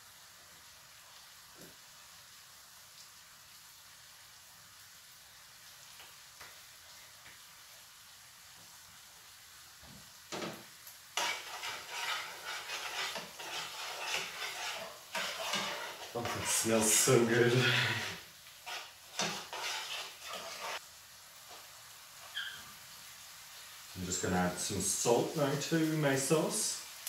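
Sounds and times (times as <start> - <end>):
sauce sizzling in a frying pan: 0.0 - 27.0
utensil stirring and scraping sauce: 11.2 - 20.8.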